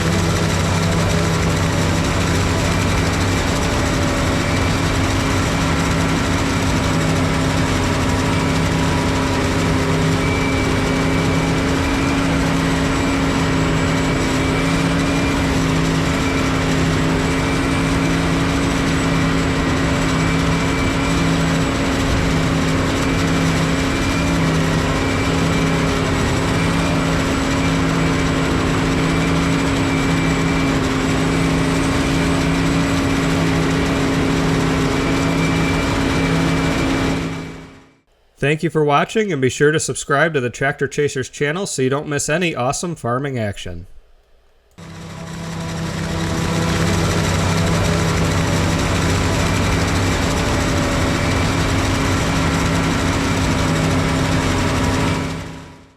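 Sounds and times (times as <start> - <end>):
deep engine hum: 0.0 - 37.8, 44.8 - 55.7
high-pitched machine whine: 0.0 - 38.0, 44.8 - 55.9.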